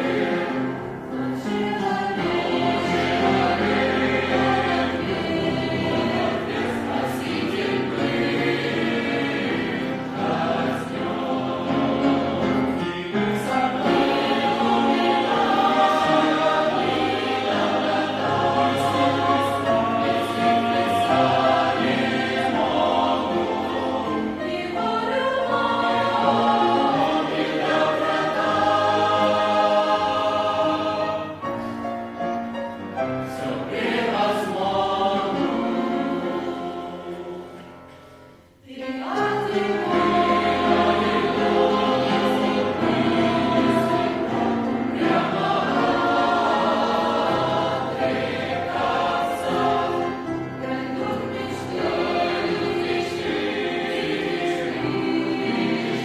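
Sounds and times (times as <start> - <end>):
youth choir singing: 0.0 - 32.0, 33.1 - 37.8, 38.5 - 56.0.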